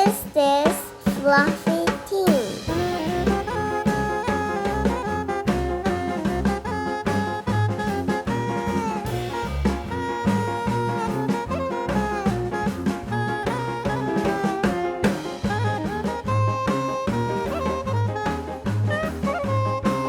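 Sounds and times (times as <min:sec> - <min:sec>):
upbeat jazz music: 0:00.0 - 0:20.0.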